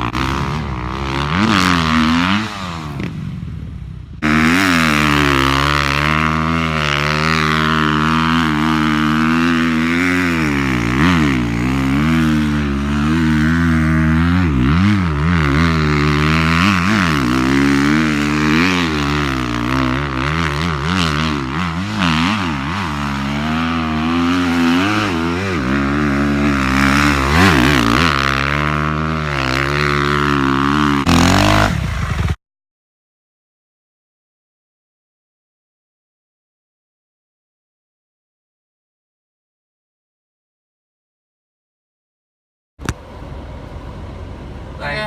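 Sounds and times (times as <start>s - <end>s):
dirt bike engine revving: 0.0s - 32.4s.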